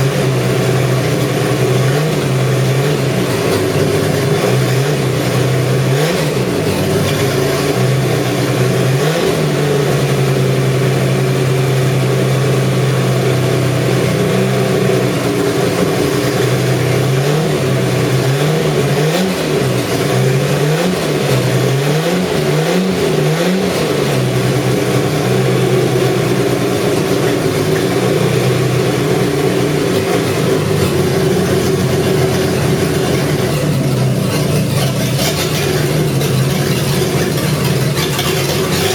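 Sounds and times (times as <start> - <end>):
engine revving and idling: 0.0 - 38.9.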